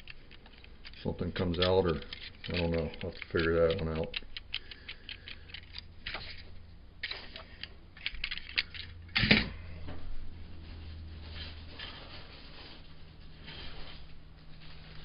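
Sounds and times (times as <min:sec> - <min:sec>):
plastic pieces clicking and rattling: 0:00.0 - 0:06.4, 0:07.0 - 0:09.0.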